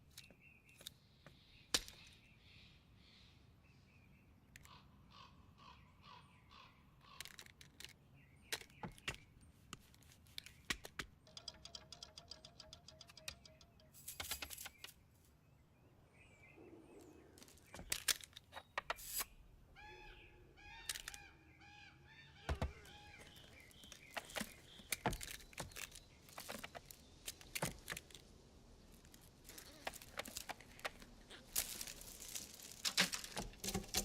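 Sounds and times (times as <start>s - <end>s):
sharp knocks and clicks: 10.6s - 14.9s.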